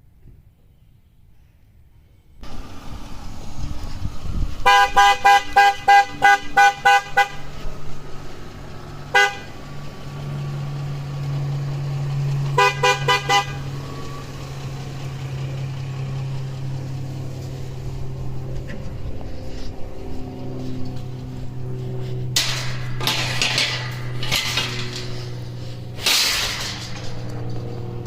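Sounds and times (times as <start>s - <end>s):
truck engine running: 2.4s - 28.0s
truck horn honking: 4.6s - 16.4s.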